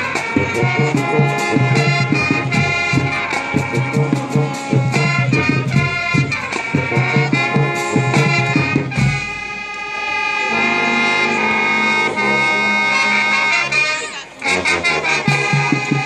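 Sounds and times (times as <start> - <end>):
driving percussion beat: 0.0 - 11.4, 14.6 - 16.0
brass-like held chords: 0.0 - 16.0.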